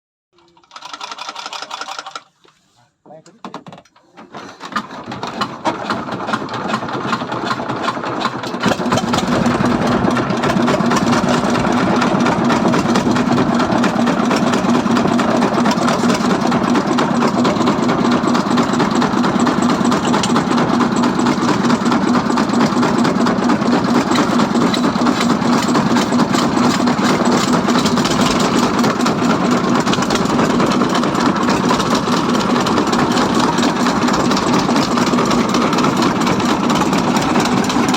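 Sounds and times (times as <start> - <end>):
diesel boat engine running: 8.5 - 37.9.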